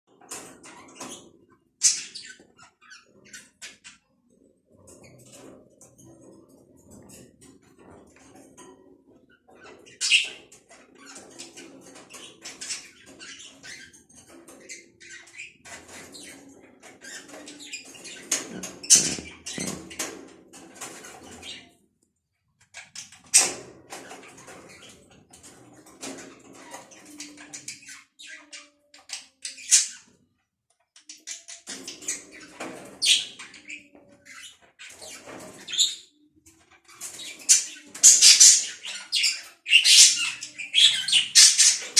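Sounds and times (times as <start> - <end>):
budgerigars chattering: 37.2 - 41.9.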